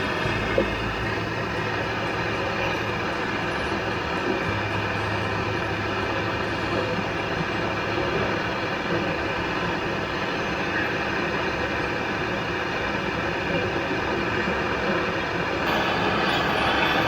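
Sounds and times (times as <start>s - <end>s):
steady machine noise: 0.0s - 9.5s, 15.6s - 17.0s.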